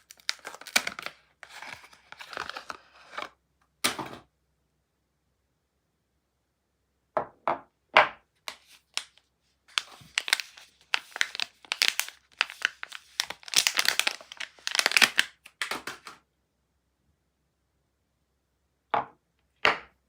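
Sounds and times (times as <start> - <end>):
wrapper crackling and crinkling: 0.0 - 3.3, 8.5 - 16.1.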